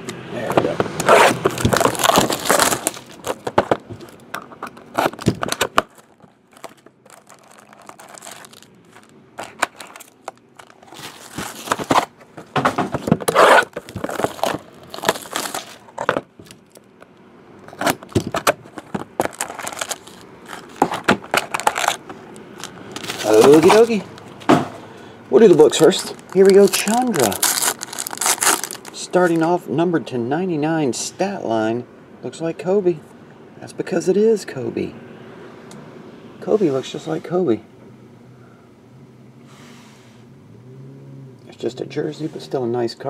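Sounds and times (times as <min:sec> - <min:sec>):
packaging crinkling and tearing: 0:01.0 - 0:12.1, 0:13.0 - 0:16.6, 0:17.7 - 0:24.4, 0:25.4 - 0:29.5.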